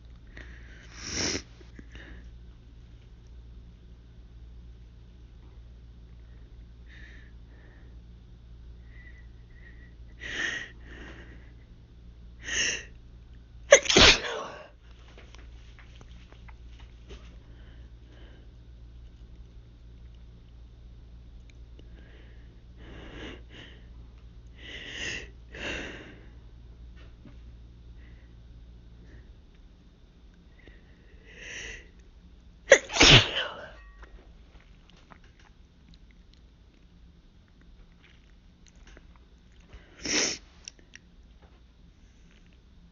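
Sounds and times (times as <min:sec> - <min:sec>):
faint sniffing: 0:00.5 - 0:01.8, 0:39.8 - 0:40.6
breathy build-up before sneeze: 0:00.9 - 0:01.6, 0:13.7 - 0:14.7, 0:32.7 - 0:33.8
woman sneezing: 0:13.7 - 0:14.7, 0:32.7 - 0:33.8.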